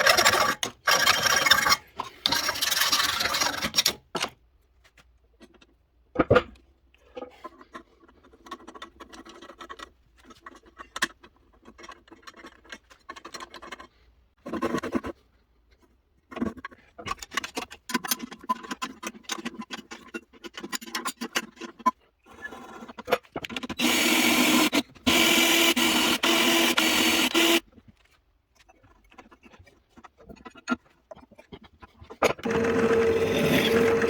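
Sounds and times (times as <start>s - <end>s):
hand tool scraping wood: 0.0s - 4.0s, 23.8s - 27.6s, 31.8s - 34.0s.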